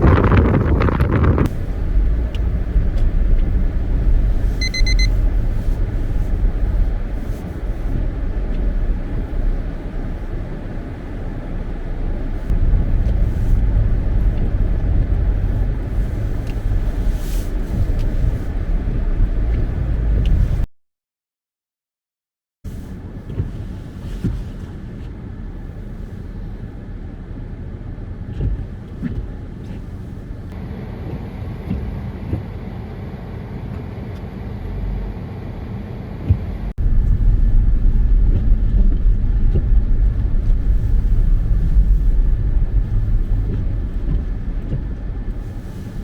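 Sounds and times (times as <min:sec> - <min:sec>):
car road rumble: 0:00.0 - 0:20.7, 0:22.7 - 0:46.0
short electronic beep: 0:04.6 - 0:05.1.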